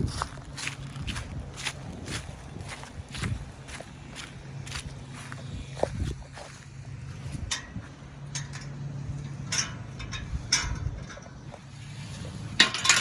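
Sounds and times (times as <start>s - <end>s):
footsteps crunching on ground: 0.0s - 8.0s
steady low hum: 0.0s - 13.0s.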